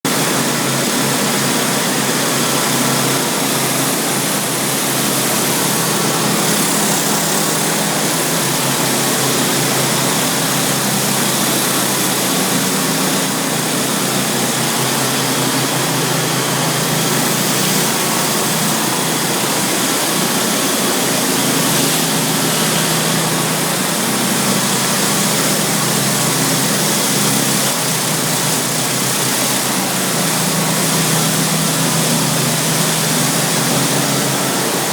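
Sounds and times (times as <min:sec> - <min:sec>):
pressure washer engine running: 0:00.0 - 0:34.9
high-pressure water spray hissing: 0:00.1 - 0:34.9.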